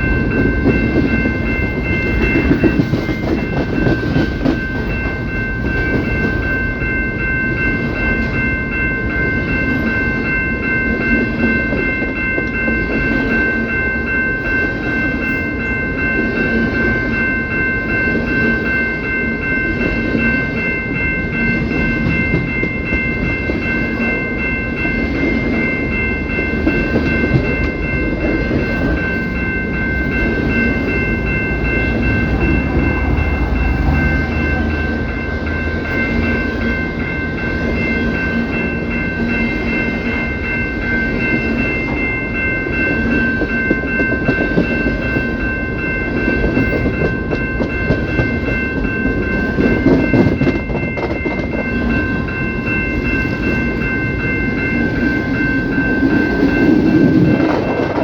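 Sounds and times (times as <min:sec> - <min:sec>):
train rumble: 0:00.0 - 0:58.0
train wheels clacking on rail joints: 0:00.3 - 0:06.5, 0:46.1 - 0:52.2, 0:55.6 - 0:58.0.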